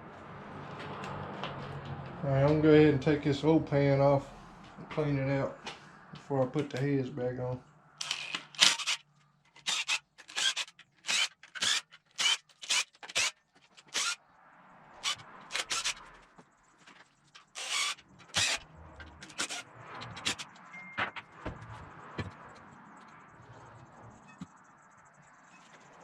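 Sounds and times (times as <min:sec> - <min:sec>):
ratchet wrench ratcheting: 0:08.0 - 0:14.2, 0:15.0 - 0:16.1, 0:17.4 - 0:20.5.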